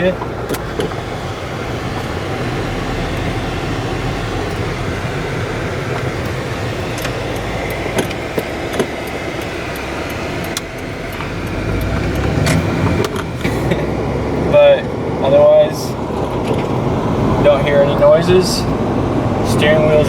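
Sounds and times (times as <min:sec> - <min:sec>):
car engine and tyre hum: 0:00.0 - 0:20.0.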